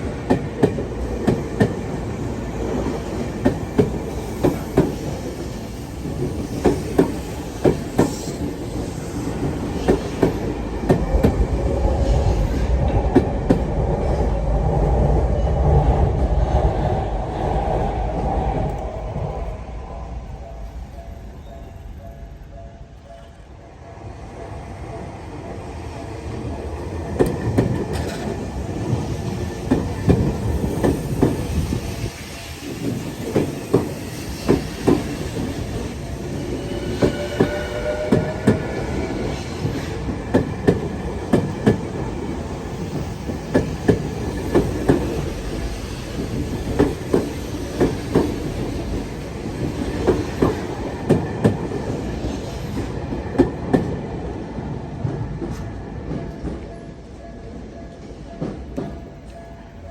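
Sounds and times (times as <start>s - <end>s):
electric train passing: 0.0s - 59.9s
wheels clacking over track joints: 27.2s - 28.5s.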